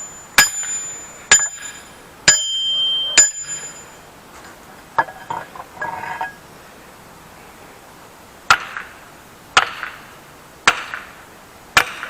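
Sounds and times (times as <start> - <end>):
light metal clinks: 0.0 - 4.0
steel striking steel ringing: 0.0 - 4.1.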